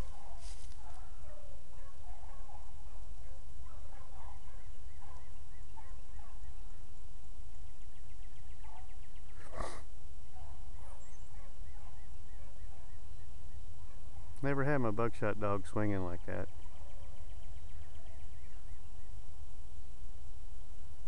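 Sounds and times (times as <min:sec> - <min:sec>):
hounds baying: 0:00.0 - 0:06.8, 0:08.6 - 0:13.1, 0:13.8 - 0:14.4.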